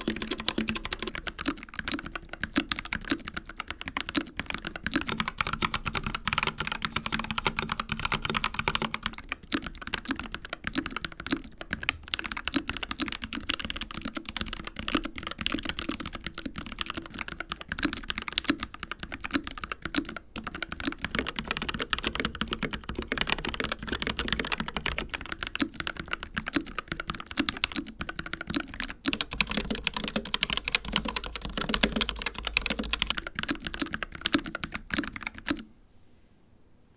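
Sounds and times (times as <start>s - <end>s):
fast typing on mechanical keyboard: 0.0s - 35.7s.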